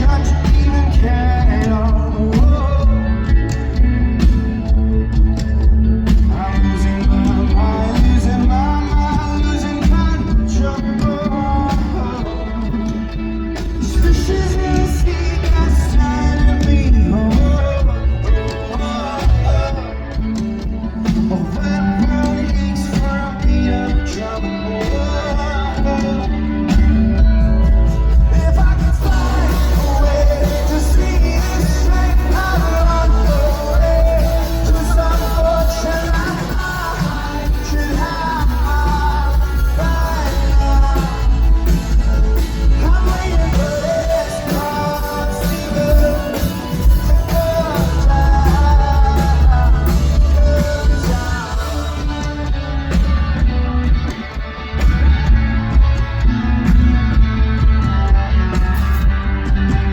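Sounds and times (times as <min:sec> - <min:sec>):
man singing: 0:00.0 - 0:54.4
rock band playing live: 0:00.0 - 0:59.9.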